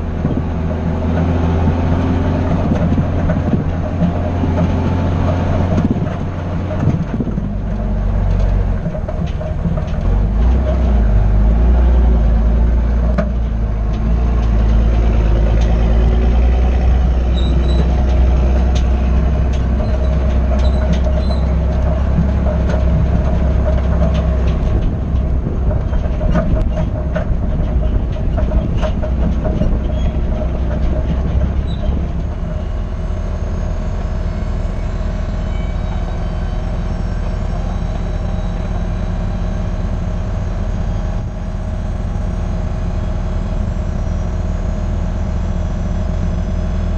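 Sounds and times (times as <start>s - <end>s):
diesel engine running under load: 0.0s - 46.9s
metallic clanks and rattles: 2.0s - 11.2s, 12.9s - 33.0s.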